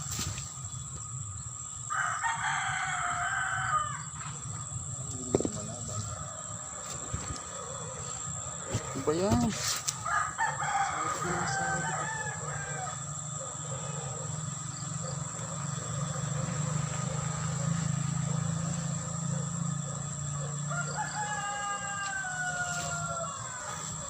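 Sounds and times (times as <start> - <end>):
rooster crowing: 1.9 - 4.2, 9.9 - 16.2, 17.2 - 24.0.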